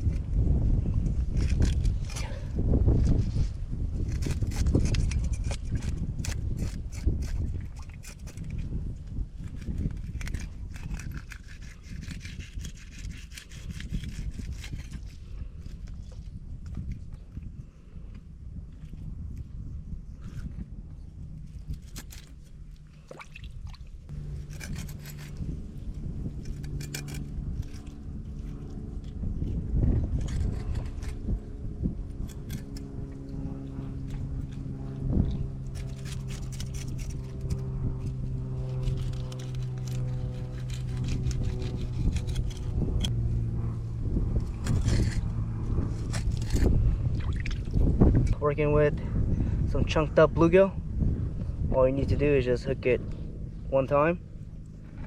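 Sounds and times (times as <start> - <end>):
knife scraping and sawing fish: 1.3 - 2.5, 3.3 - 8.8, 9.4 - 16.3, 21.4 - 23.2, 24.1 - 31.6, 32.2 - 43.1, 44.4 - 46.9
low engine hum: 13.8 - 55.0
sharp knocks and scrapes: 24.1 - 31.3, 35.7 - 37.8, 38.4 - 43.1, 44.4 - 46.9.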